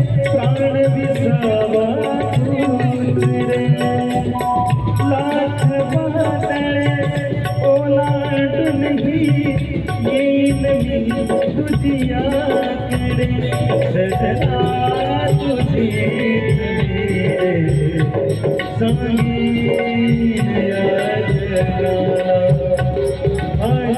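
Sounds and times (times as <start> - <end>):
tabla and light percussion: 0.0 - 23.9.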